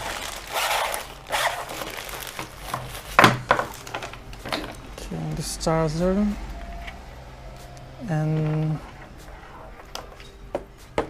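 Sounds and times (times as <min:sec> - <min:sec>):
packaging rustling: 0:00.0 - 0:05.0.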